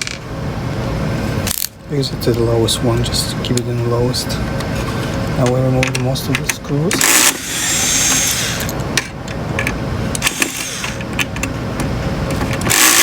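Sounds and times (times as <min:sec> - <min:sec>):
electric screwdriver whirring: 0:07.0 - 0:08.8, 0:10.2 - 0:11.1, 0:12.7 - 0:13.0.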